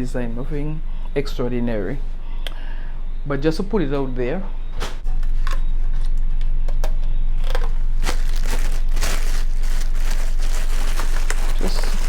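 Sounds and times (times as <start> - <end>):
steady low hum: 0.0 - 12.0
plastic packaging crinkling: 7.4 - 12.0.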